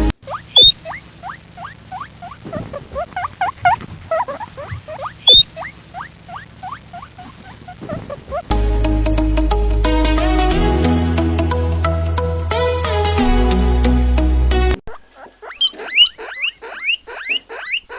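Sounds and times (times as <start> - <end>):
guinea pig squeaking: 0.0 - 8.5, 14.9 - 17.9.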